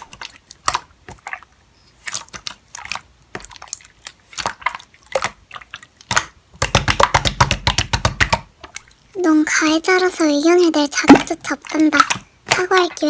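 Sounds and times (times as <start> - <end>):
slime squished by hand: 0.0 - 8.8.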